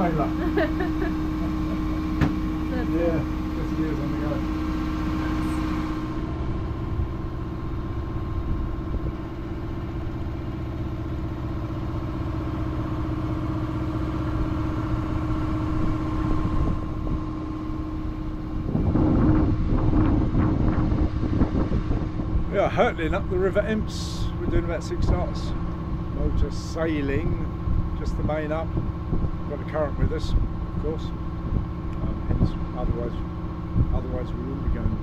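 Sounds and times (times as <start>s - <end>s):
boat engine droning: 0.0s - 35.0s.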